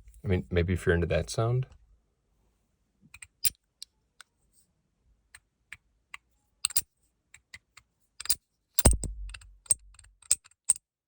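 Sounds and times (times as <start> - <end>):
metal fidget slider clacking: 6.6 - 6.8, 8.2 - 10.8.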